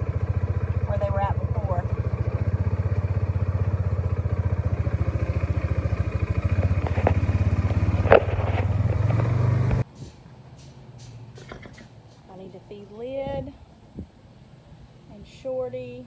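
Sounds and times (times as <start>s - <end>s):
utility vehicle engine running: 0.0s - 13.7s
sharp clank: 9.8s - 12.3s.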